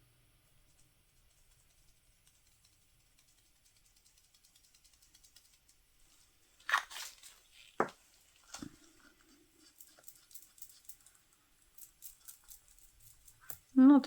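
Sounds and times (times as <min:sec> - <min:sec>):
crinkly rustle: 0:06.0 - 0:13.8.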